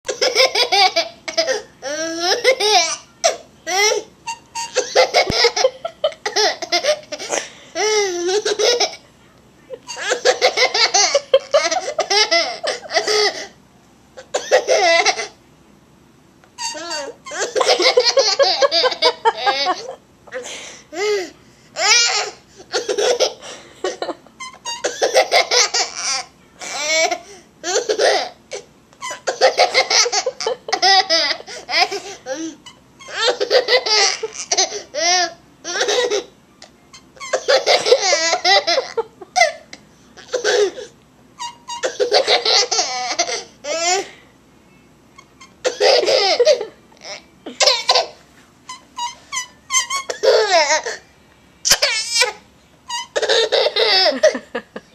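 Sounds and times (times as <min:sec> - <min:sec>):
young child laughing: 0:16.9 - 0:20.4.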